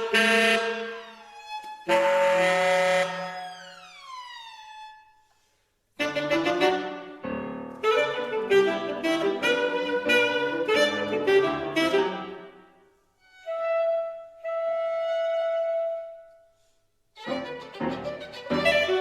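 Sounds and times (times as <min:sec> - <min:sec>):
saxophone: 0:00.0 - 0:04.8, 0:06.0 - 0:16.5, 0:17.2 - 0:19.0
piano: 0:06.0 - 0:16.6, 0:17.2 - 0:19.0.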